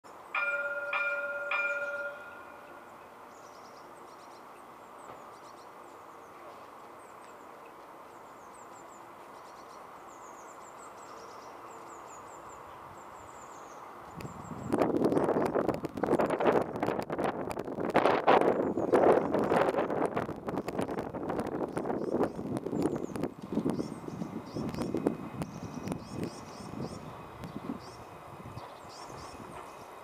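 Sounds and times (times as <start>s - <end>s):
tram and street hum: 0.0s - 30.0s
tram warning chime: 0.1s - 16.4s, 23.9s - 30.0s
small birds chirping: 1.7s - 16.4s, 20.6s - 30.0s.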